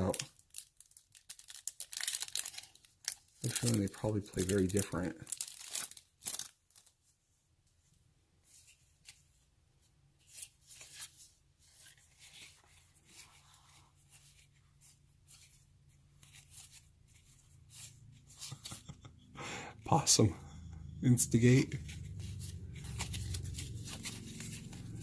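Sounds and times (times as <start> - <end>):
game cards clicking and rustling: 0.0 - 6.9, 21.4 - 25.0.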